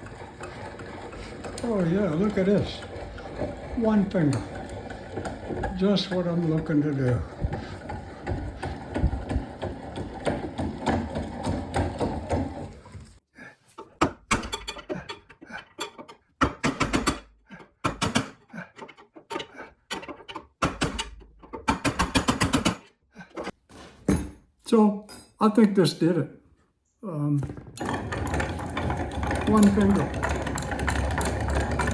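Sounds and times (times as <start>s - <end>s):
vise screw rattling: 0.0s - 12.9s, 14.3s - 23.5s, 27.5s - 31.9s
metal clicks and clanks: 14.2s - 23.6s, 27.5s - 31.9s.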